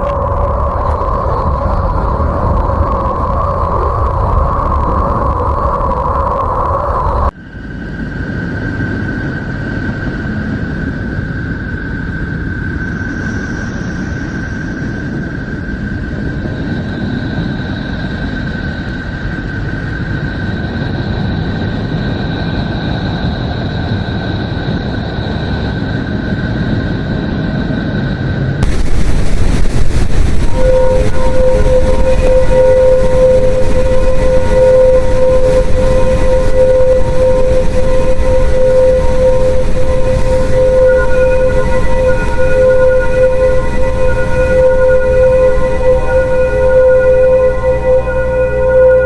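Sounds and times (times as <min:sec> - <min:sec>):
high whistling tone: 0:00.0 - 0:07.6, 0:29.8 - 0:49.0
deep rumbling noise: 0:00.0 - 0:49.0
fainter higher tone: 0:28.6 - 0:49.0
harsh noise: 0:28.6 - 0:49.0.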